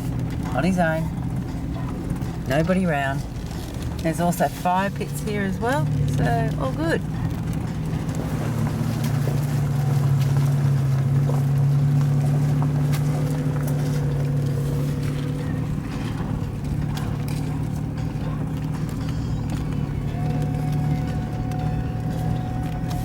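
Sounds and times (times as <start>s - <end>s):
vehicle engine running: 0.0s - 23.0s.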